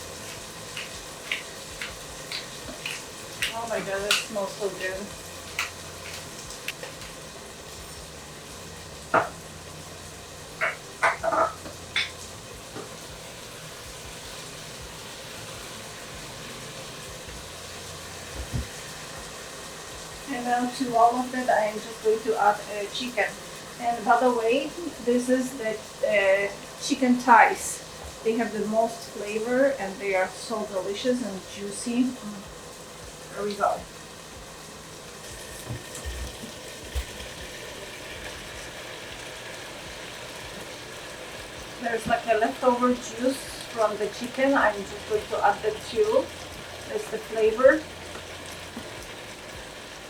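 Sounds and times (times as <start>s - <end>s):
food sizzling in a frying pan: 0.0s - 50.0s
dull knocks of pan or utensil: 10.6s - 12.2s.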